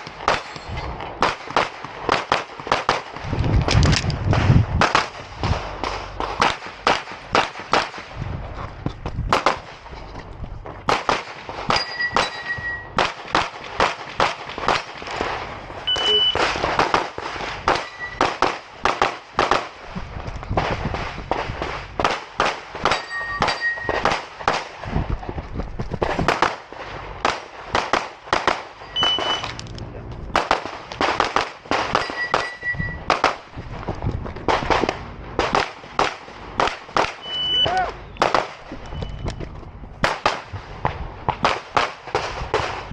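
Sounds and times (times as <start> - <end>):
rapid pistol fire: 0.0 - 8.2, 9.3 - 9.8, 10.8 - 15.6, 16.3 - 19.9, 20.5 - 25.1, 25.9 - 29.4, 30.3 - 33.6, 34.4 - 37.3, 38.2 - 38.7, 40.0 - 42.9
steel target ringing: 11.7 - 13.0, 15.9 - 16.6, 17.7 - 18.3, 22.9 - 24.0, 28.8 - 29.6, 31.9 - 33.1, 37.2 - 37.7.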